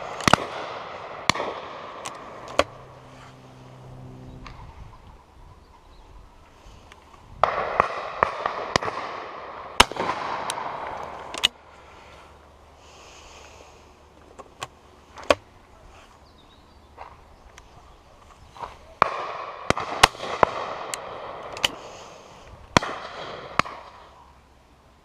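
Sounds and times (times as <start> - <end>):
distant gunshots: 0.0 - 3.0, 7.4 - 11.3, 19.0 - 21.6, 22.8 - 24.1
shotgun shots with echo: 0.1 - 2.7, 7.4 - 11.0, 19.0 - 21.5, 22.8 - 24.0.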